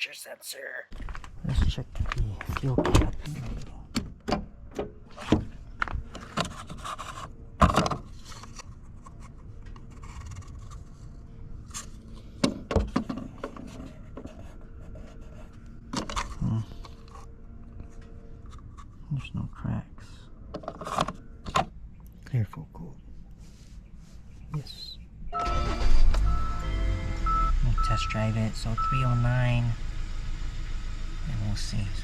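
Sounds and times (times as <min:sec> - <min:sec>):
rubbing and scraping: 0:05.1 - 0:19.1.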